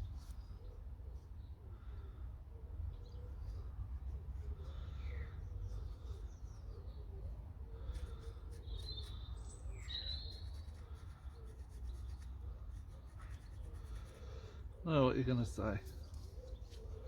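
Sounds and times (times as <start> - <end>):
birds chirping and whistling: 8.7 - 10.6.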